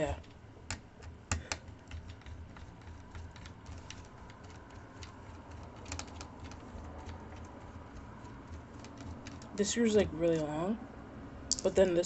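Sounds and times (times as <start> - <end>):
faint low hum: 0.0 - 12.0
screwdriver clicking on screws: 0.7 - 9.5.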